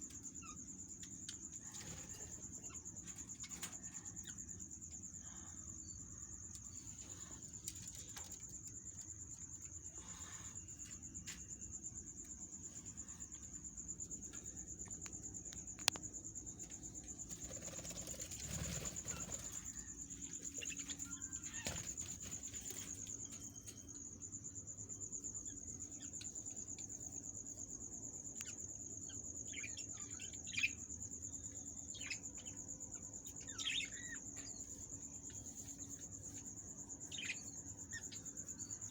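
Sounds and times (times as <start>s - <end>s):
faint clicks: 14.3s - 16.1s.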